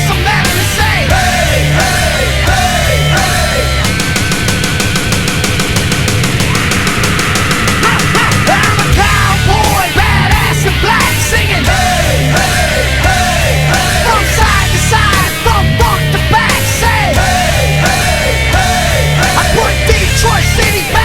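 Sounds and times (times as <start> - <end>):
heavy rock music: 0.0 - 21.0
fast even drum strokes: 3.8 - 16.6.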